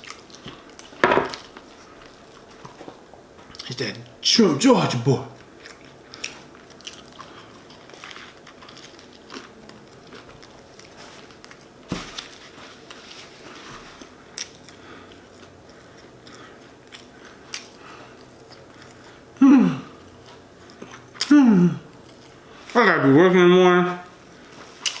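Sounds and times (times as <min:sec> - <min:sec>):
chewing and biting sandwich: 0:05.4 - 0:19.4, 0:20.0 - 0:22.7.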